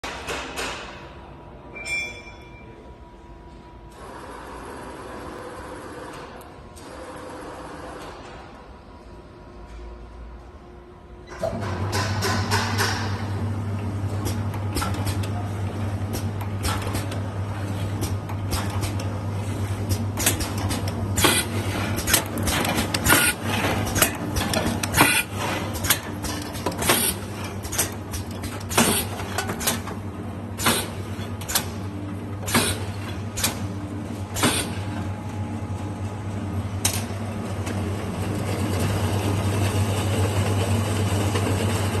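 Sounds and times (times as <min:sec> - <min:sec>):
machine motor hum: 0:03.5 - 0:42.0
sharp mechanical clacks: 0:19.8 - 0:30.0, 0:30.6 - 0:31.8.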